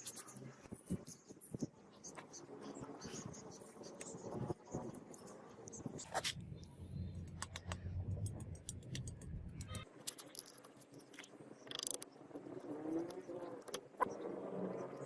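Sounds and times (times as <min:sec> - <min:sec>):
low hum: 0:05.8 - 0:09.8.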